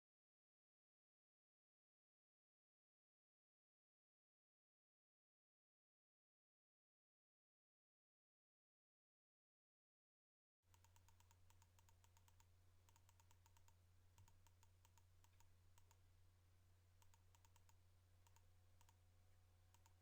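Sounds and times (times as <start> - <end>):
rapid keyboard clicking: 10.7 - 16.0, 17.0 - 19.0
low electrical hum: 10.7 - 20.0.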